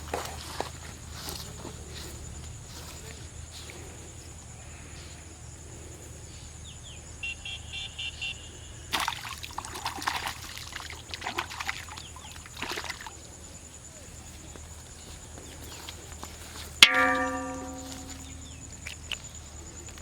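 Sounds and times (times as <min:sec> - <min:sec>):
water splashing and dribbling: 0:08.9 - 0:13.4, 0:15.8 - 0:19.3.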